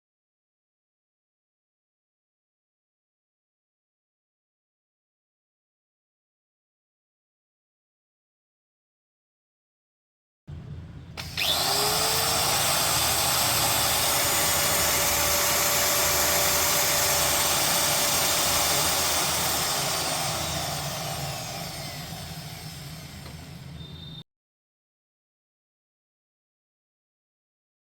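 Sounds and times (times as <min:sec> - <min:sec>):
angle grinder whining: 0:11.2 - 0:24.2.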